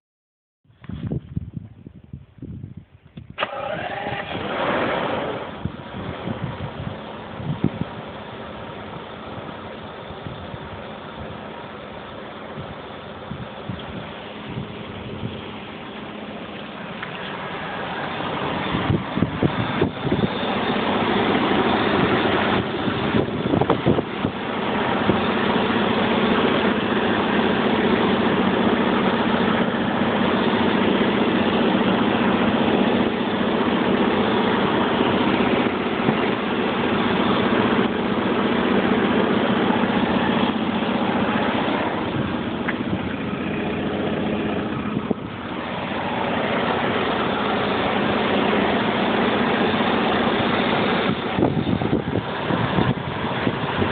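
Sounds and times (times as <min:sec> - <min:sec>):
car engine idling: 0:03.1 - 0:53.9
metallic tapping from engine: 0:13.7 - 0:53.9.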